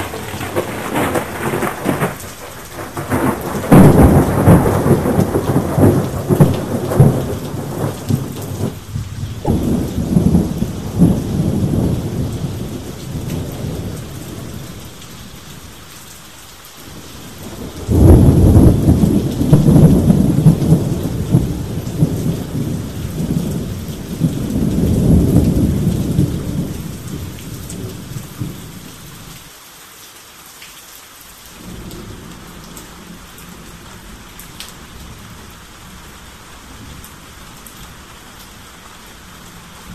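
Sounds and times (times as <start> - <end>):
loud thunder clap: 0.0 - 14.7, 17.5 - 28.6
rolling thunder: 0.0 - 15.8, 16.9 - 29.4, 31.6 - 34.3
steady rain: 0.0 - 39.9.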